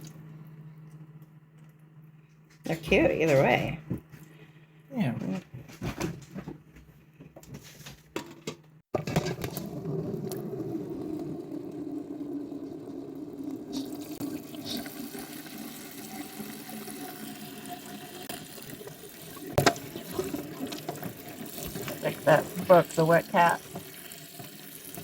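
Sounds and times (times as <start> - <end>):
water running into container: 9.0 - 25.0.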